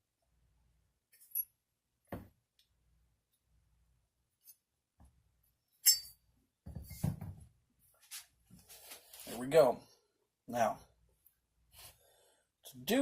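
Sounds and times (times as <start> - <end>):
sharp ringing metal clink: 5.8 - 6.2.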